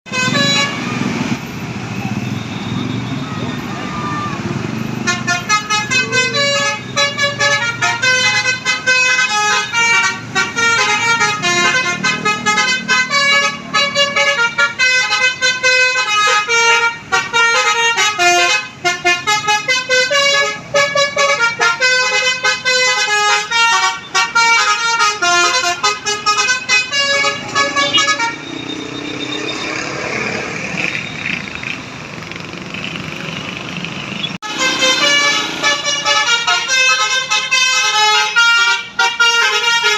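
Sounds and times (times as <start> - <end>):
bus horn playing melody: 0.1 - 1.0, 5.0 - 28.5, 34.4 - 39.9.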